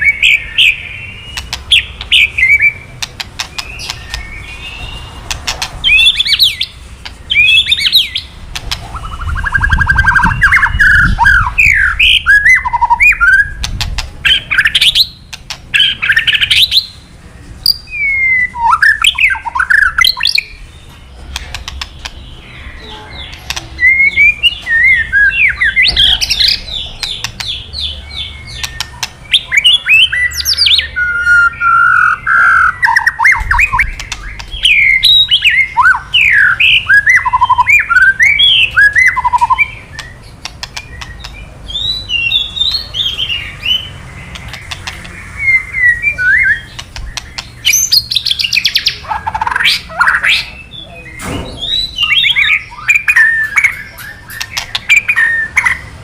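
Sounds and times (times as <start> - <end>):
bird crackling clicks: 3.0 - 4.2, 15.3 - 15.7, 21.3 - 22.2, 33.7 - 34.6, 40.0 - 41.4, 44.3 - 45.1, 46.7 - 47.6, 54.3 - 54.9
bird singing whistled phrases: 8.9 - 13.6, 17.6 - 20.6, 22.6 - 26.6, 28.2 - 40.2, 40.8 - 43.9, 45.4 - 46.8, 47.6 - 55.8.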